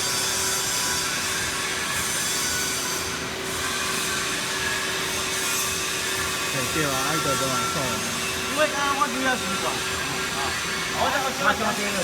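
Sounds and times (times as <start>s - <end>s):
machinery humming: 4.8s - 12.0s.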